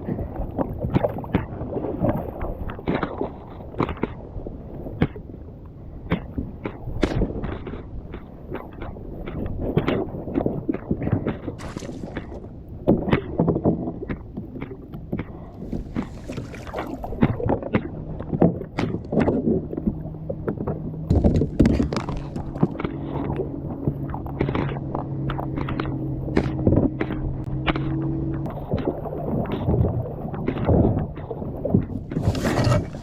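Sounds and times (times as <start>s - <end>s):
kayak gear knocking and clattering: 15.1s - 17.8s, 21.1s - 22.8s, 31.9s - 33.0s.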